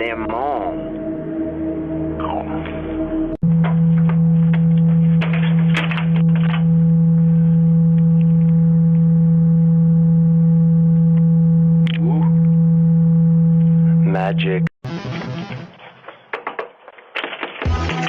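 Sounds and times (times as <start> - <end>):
loud low hum: 0.0 - 15.6.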